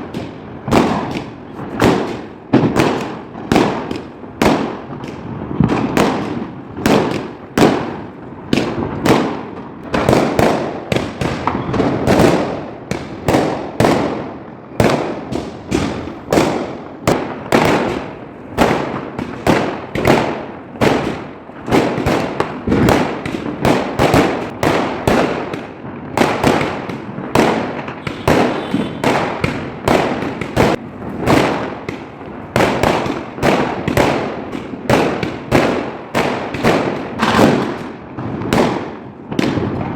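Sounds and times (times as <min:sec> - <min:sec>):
firecrackers and fireworks bursting: 0:00.0 - 0:39.9.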